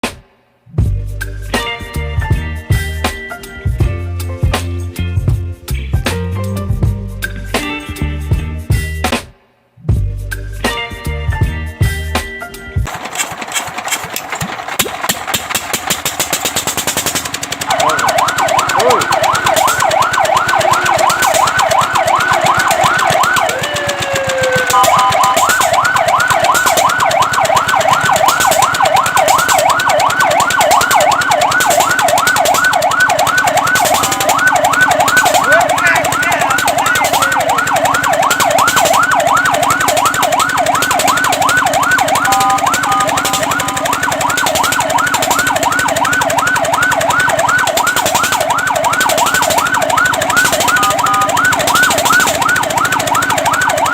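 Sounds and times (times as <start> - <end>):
fire truck siren yelping: 12.8 - 53.9.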